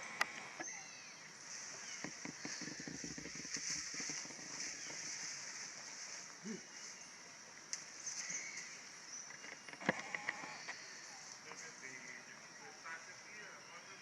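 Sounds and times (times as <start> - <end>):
sharp clicks: 0.0 - 0.7, 9.3 - 10.8
steady high hiss: 0.0 - 14.0.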